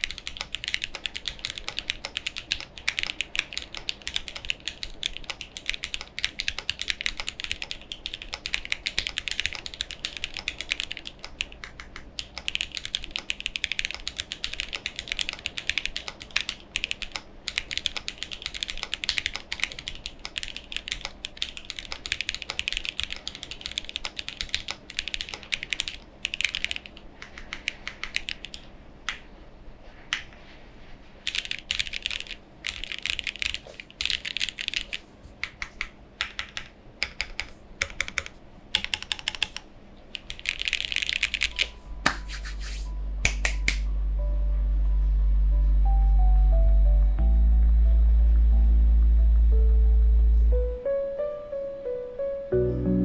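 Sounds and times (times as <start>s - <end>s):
mechanical keyboard typing: 0.0s - 29.3s, 31.2s - 43.9s.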